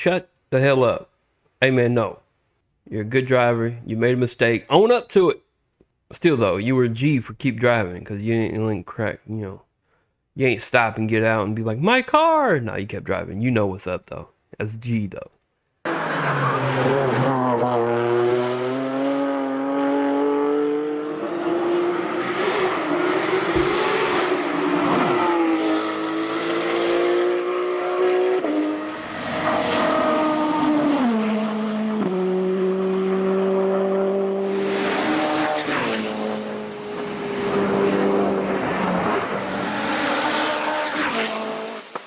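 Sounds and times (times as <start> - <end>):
race car engine at high revs: 15.9 - 42.0.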